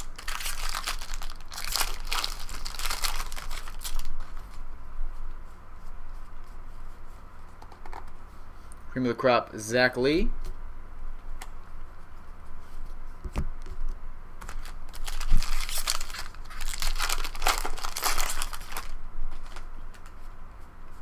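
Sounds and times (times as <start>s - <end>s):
foil wrapper tearing and crinkling: 0.0s - 4.5s, 14.4s - 20.1s.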